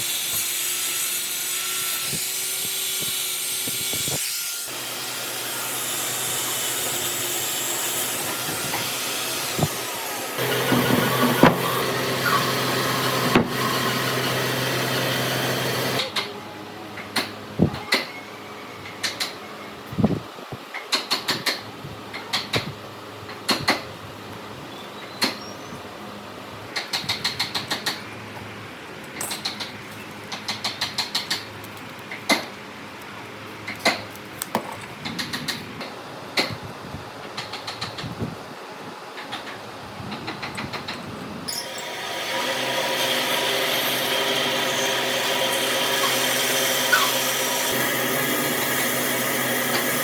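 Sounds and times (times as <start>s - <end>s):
electric power tool running: 4.7s - 16.1s, 41.6s - 50.0s.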